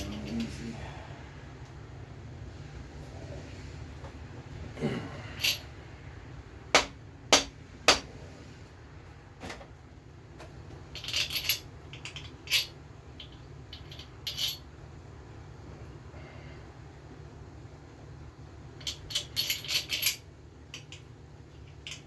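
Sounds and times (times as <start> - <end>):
metal tools clinking and rattling: 0.0 - 0.6, 5.3 - 5.7, 11.0 - 14.6, 18.8 - 20.2.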